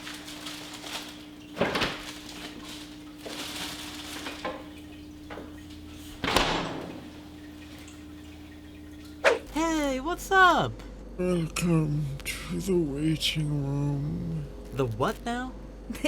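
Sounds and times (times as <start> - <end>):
items clattering in fridge: 0.0 - 9.5
refrigerator hum: 0.0 - 16.0
refrigerator door knocks: 6.2 - 7.3.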